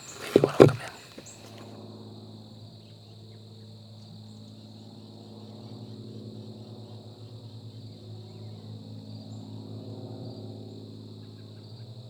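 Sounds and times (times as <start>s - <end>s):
crickets trilling: 0.0s - 8.2s.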